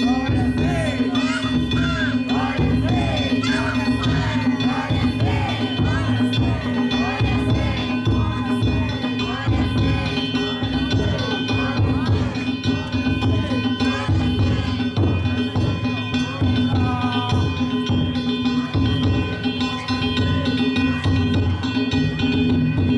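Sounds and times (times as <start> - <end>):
crowd of voices: 0.0 - 22.9
drums and gongs in rhythm: 0.0 - 22.9.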